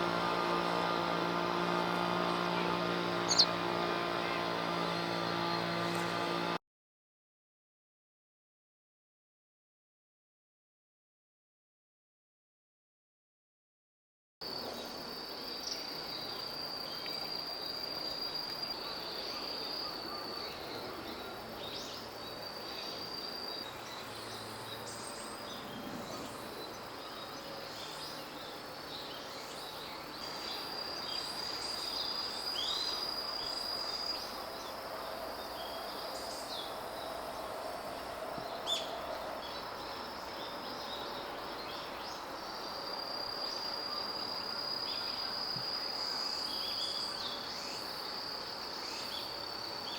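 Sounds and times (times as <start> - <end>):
faint outdoor background noise: 0.0 - 6.6, 14.4 - 49.9
high-pitched insect trill: 2.0 - 3.6, 14.4 - 49.9
high bird chirps: 3.3 - 3.5.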